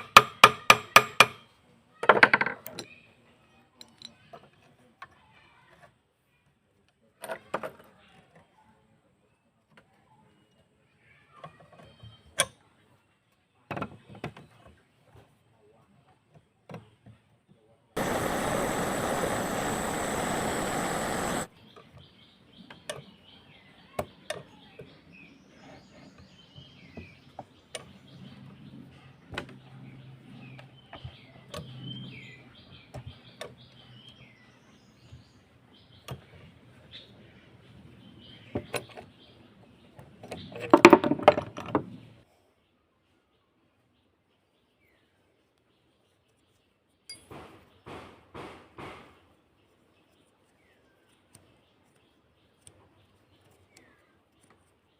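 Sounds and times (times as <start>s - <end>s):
loud steady hissing: 18.0s - 21.5s
low hum: 18.0s - 21.5s.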